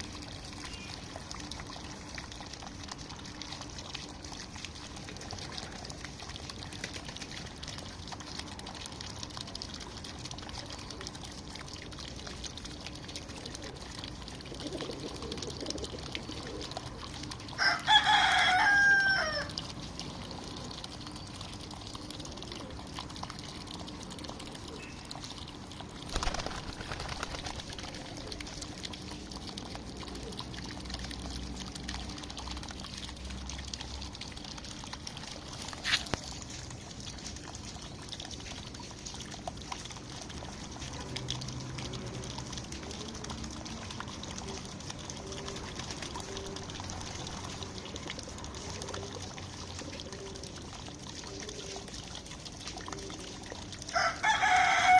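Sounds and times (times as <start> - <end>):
water trickling: 0.0 - 54.9
rooster crowing: 17.6 - 19.5, 53.9 - 54.9.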